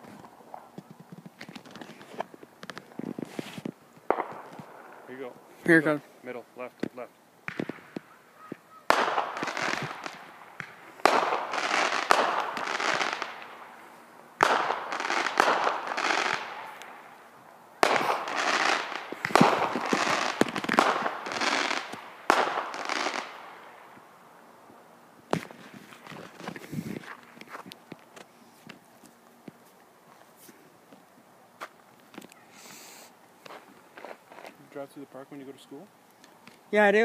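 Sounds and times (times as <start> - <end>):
firework bangs: 0.0 - 5.8, 6.9 - 13.8, 14.4 - 17.2, 17.8 - 24.1, 25.3 - 27.0
firework crackling: 0.0 - 24.3, 25.2 - 28.2, 32.0 - 37.0.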